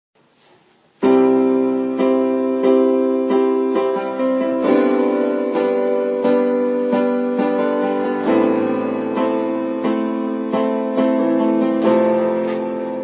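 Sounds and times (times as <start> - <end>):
piano chords: 0.9 - 13.0.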